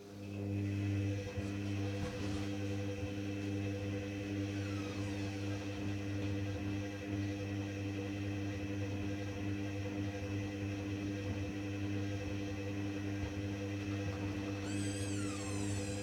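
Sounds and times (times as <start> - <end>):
washing machine motor humming: 0.0 - 16.0.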